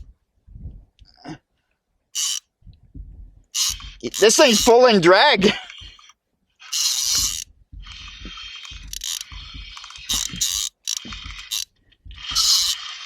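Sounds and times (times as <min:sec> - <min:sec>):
fishing reel drag clicking: 0:02.2 - 0:02.4, 0:03.6 - 0:04.9, 0:05.7 - 0:07.4, 0:08.3 - 0:13.0.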